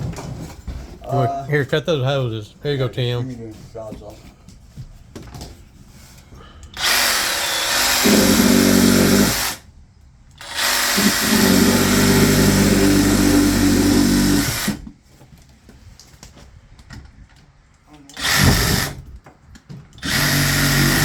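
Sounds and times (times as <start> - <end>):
reciprocating saw cutting hoses: 6.7 - 9.7, 10.4 - 14.8, 18.0 - 19.1, 20.0 - 21.0.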